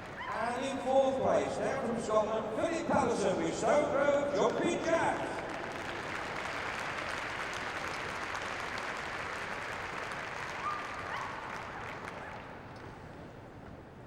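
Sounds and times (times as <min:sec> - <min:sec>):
crowd applauding: 0:03.7 - 0:12.7.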